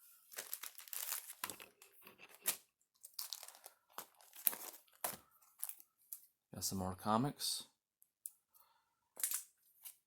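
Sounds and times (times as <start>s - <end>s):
packaging crinkling: 0.3s - 5.9s.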